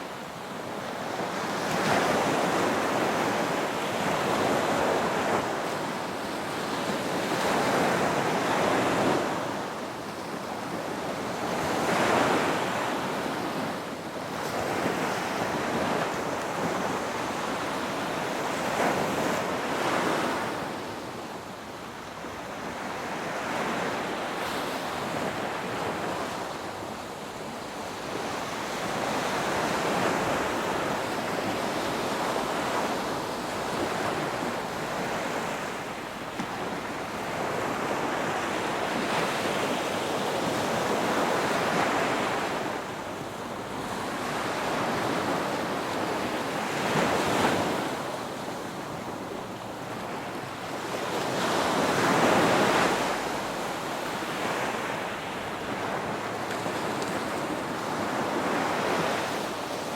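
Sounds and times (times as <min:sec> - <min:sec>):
ocean waves breaking on shore: 0:00.0 - 0:59.9.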